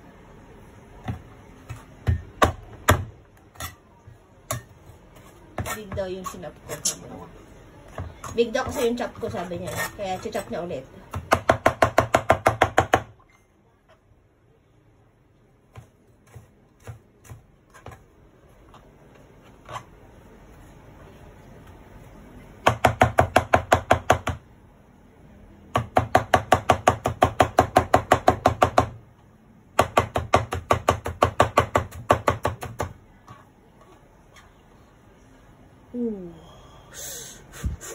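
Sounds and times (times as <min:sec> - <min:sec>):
knife chopping on cutting board: 0:15.7 - 0:18.0.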